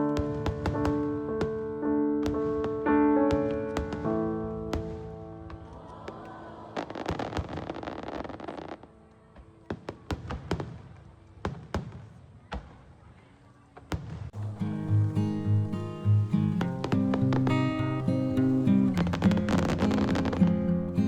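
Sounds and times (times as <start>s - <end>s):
fireworks crackling and banging: 0.0s - 1.6s, 2.2s - 21.0s
piano music: 0.0s - 9.7s, 14.4s - 21.0s
guitar music: 14.4s - 21.0s.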